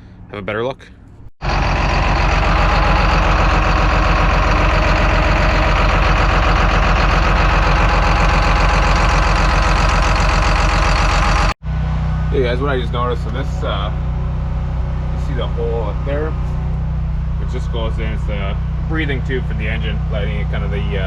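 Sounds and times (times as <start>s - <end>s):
small engine running: 1.4s - 21.0s.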